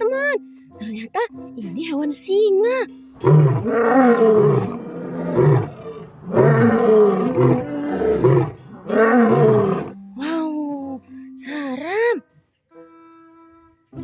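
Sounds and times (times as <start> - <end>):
lion roaring: 3.2 - 9.9.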